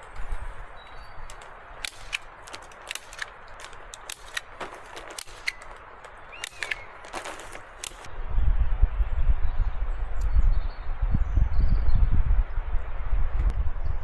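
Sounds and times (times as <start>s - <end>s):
sharp clicks and snaps: 0.0s - 8.1s.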